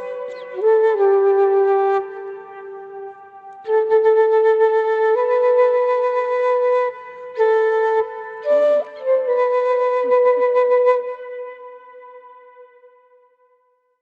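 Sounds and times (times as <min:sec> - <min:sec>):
bamboo flute melody: 0:00.0 - 0:13.2.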